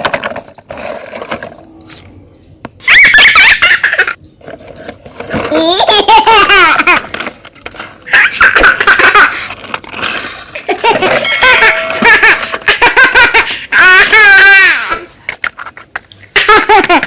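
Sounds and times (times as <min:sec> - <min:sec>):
high-pitched laughter: 0:02.8 - 0:04.2, 0:05.5 - 0:07.2, 0:08.1 - 0:09.6, 0:10.6 - 0:15.1, 0:16.3 - 0:17.0.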